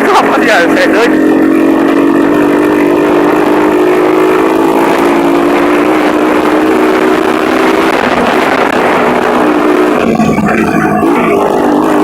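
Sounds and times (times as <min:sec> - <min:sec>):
motorcycle engine at high revs: 0:00.0 - 0:12.0.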